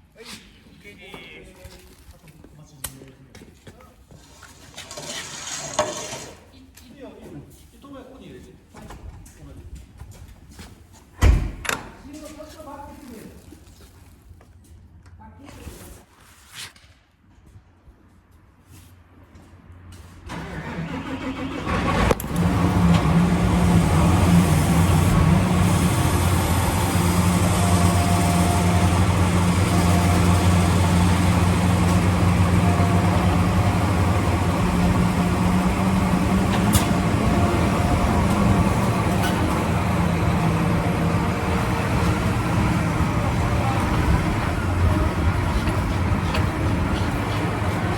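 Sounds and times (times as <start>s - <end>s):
vehicle engine starting and idling: 20.2s - 47.9s.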